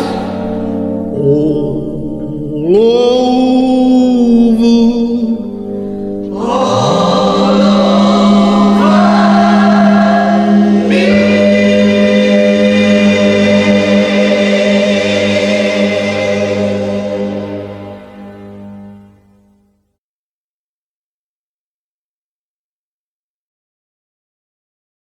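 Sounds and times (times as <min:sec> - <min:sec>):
choir singing sustained chords: 0:00.0 - 0:19.6.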